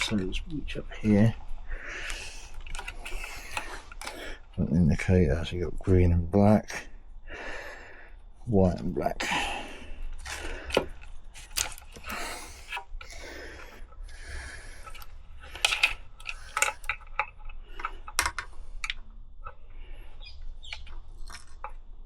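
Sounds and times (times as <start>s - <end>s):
clicks taps and rustling of hands: 0.0s - 4.6s, 14.6s - 22.0s.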